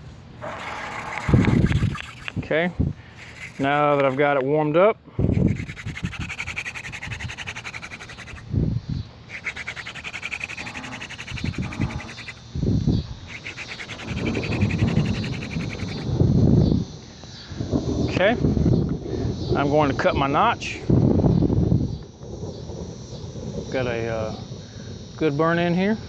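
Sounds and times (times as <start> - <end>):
hand drill squeaking on wood: 0.4 - 2.4, 3.2 - 4.4, 5.2 - 8.5, 9.3 - 12.4, 13.3 - 16.1.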